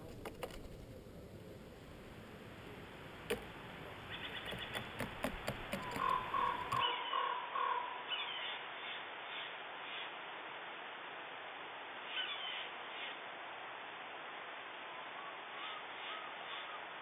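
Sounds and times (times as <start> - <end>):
sharp clicks and taps: 3.3 - 3.5, 4.3 - 6.8
short animal calls: 5.8 - 10.1, 12.1 - 13.2, 15.1 - 17.0.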